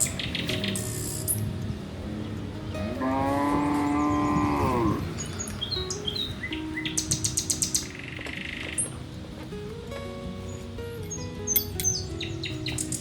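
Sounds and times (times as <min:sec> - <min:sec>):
bird chirps and trill: 0:00.0 - 0:01.5, 0:02.3 - 0:09.0, 0:10.3 - 0:13.0
cow mooing: 0:02.9 - 0:05.3.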